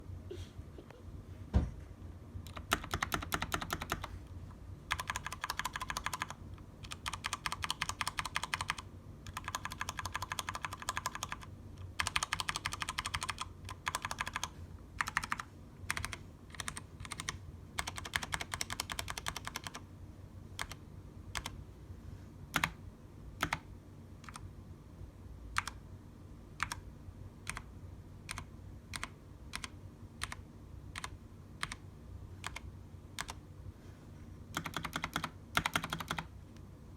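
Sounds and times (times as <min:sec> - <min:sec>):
mechanical keyboard typing: 0:02.4 - 0:04.2, 0:04.9 - 0:19.8, 0:20.6 - 0:21.6, 0:22.5 - 0:22.8, 0:23.4 - 0:24.5, 0:25.6 - 0:25.8, 0:26.6 - 0:26.8, 0:27.4 - 0:27.7, 0:28.3 - 0:31.8, 0:32.4 - 0:33.4, 0:34.5 - 0:36.3.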